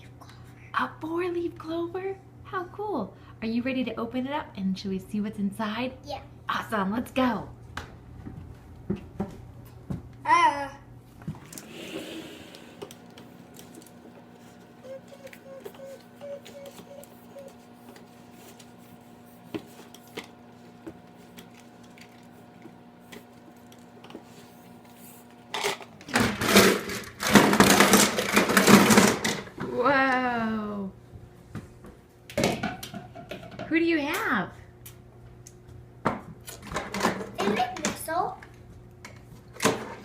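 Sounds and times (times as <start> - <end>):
steady low hum: 0.0 - 27.9
packaging rustling and crinkling: 12.5 - 28.8.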